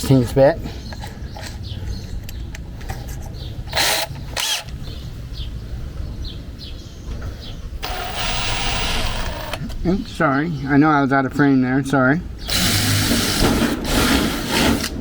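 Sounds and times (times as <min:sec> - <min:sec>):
power drill running: 0:03.7 - 0:04.7, 0:07.8 - 0:09.7, 0:12.5 - 0:14.9.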